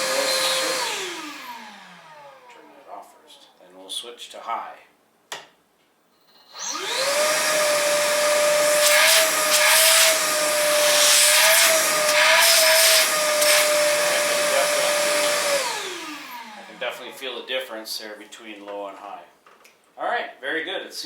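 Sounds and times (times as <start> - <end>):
vacuum motor whining: 0.0 - 2.8, 6.6 - 17.6.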